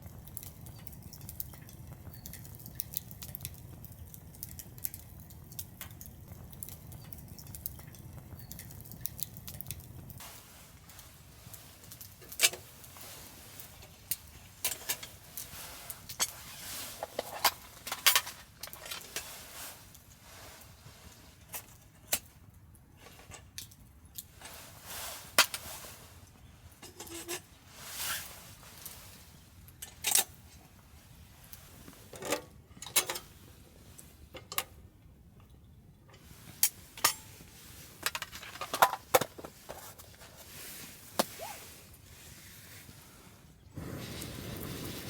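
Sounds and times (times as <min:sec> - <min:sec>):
camp cookware clinking: 0:00.1 - 0:19.4, 0:26.8 - 0:27.5, 0:32.1 - 0:33.4, 0:34.3 - 0:34.8, 0:36.1 - 0:40.0.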